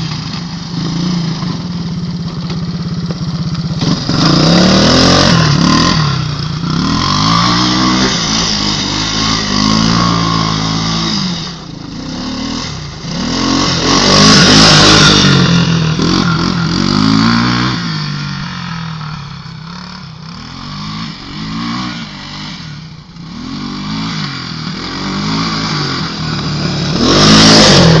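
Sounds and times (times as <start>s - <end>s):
engine revving: 2.5s - 28.0s
loud rushing noise: 3.8s - 19.2s, 24.1s - 28.0s.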